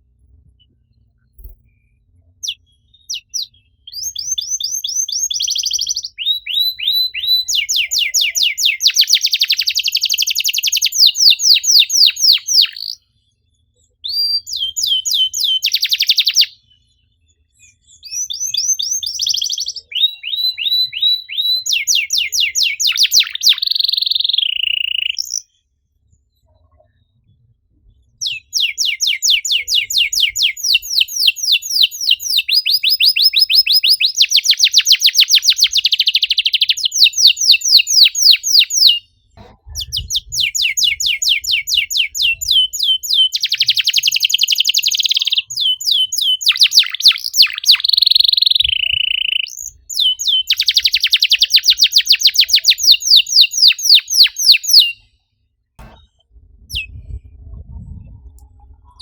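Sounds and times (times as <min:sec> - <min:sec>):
canary singing: 0:02.4 - 0:13.0, 0:14.0 - 0:16.6, 0:17.8 - 0:25.6, 0:28.2 - 0:55.2.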